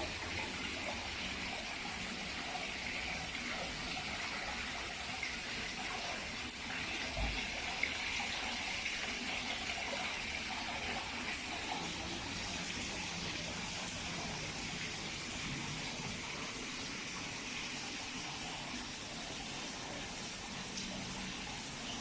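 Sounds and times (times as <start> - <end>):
waterfall splashing into pond: 0.0 - 22.0.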